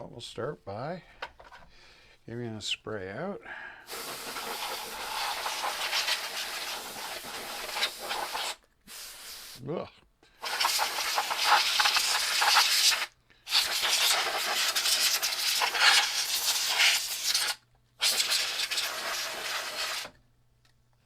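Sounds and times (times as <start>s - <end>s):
aerosol can spraying: 3.9s - 9.6s, 10.4s - 20.2s.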